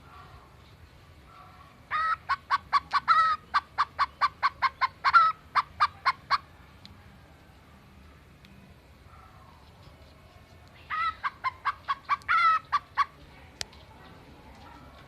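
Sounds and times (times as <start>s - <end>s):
bird clucking like a hen: 1.9s - 6.5s, 10.8s - 13.2s.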